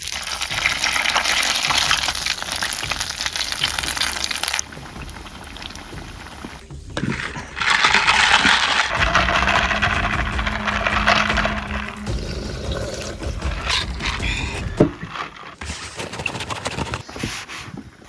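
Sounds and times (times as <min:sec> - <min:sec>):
noodles deep-frying in oil: 0:00.0 - 0:06.7.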